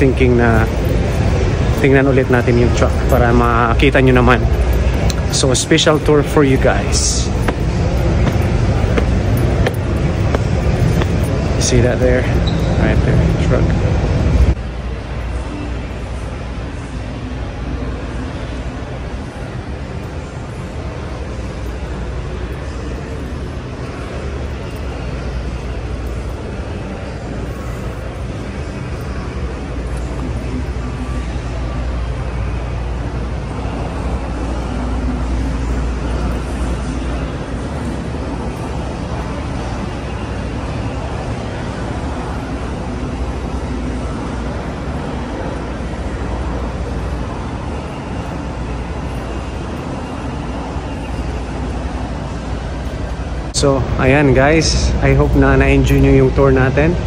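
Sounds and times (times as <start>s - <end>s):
diesel trucks idling: 0.0s - 12.4s
traffic rumble: 0.0s - 57.0s.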